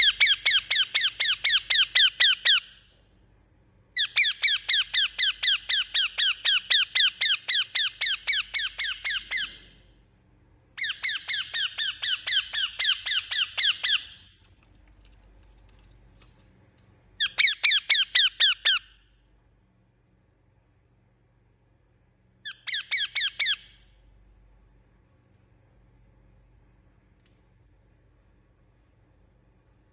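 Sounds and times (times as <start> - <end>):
parrot chirping: 0.0 - 2.9, 4.0 - 9.8, 10.8 - 14.4, 17.2 - 19.0, 22.4 - 23.9.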